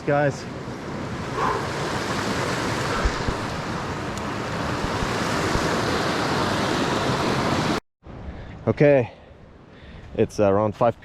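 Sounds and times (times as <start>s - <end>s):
river rushing: 0.4s - 7.8s.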